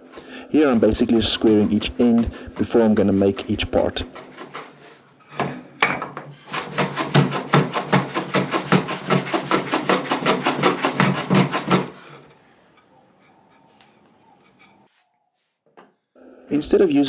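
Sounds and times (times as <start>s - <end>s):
hand tool rasping wood: 0.0s - 15.0s.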